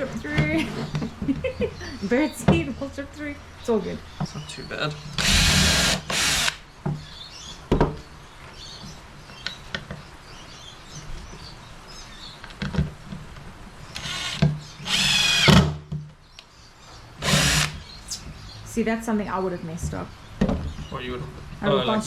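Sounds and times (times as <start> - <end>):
power drill driving screws into wood: 5.2 - 6.6, 14.0 - 15.8, 17.2 - 17.9.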